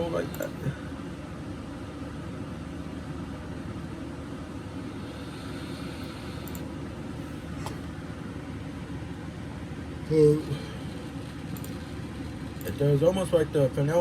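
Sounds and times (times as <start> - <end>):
low background hum and rumble: 0.0 - 14.0
short clicks: 6.4 - 6.7.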